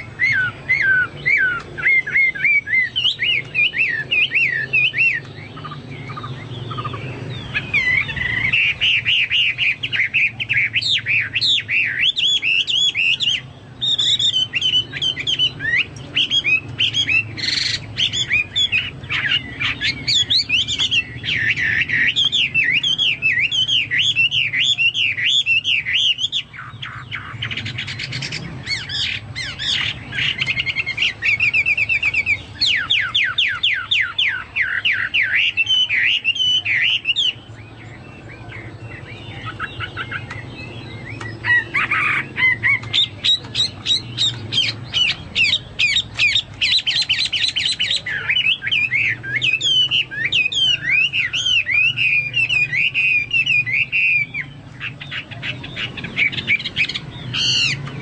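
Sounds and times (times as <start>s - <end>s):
bird singing whistled notes: 0.0s - 58.0s.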